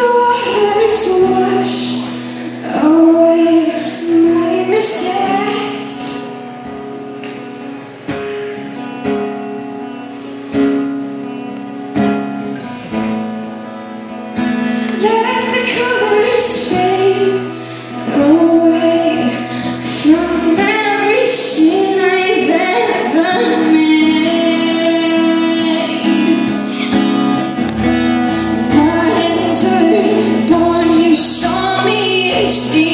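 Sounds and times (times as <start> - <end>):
woman singing: 0.0 - 6.5, 14.7 - 32.9
plucked acoustic guitar: 0.0 - 32.9.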